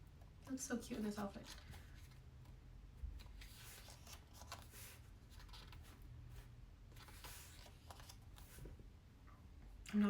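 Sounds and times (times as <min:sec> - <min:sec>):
pages turning: 0:03.2 - 0:06.0, 0:06.9 - 0:08.7.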